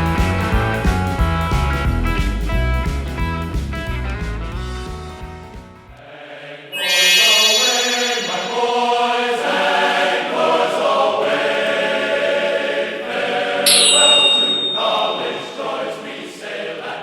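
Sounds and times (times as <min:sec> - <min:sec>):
choir-like background music: 0:05.9 - 0:17.0.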